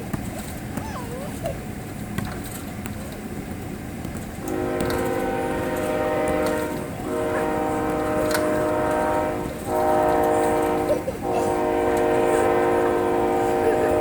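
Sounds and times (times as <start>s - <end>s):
train horn blasts: 4.4s - 14.0s.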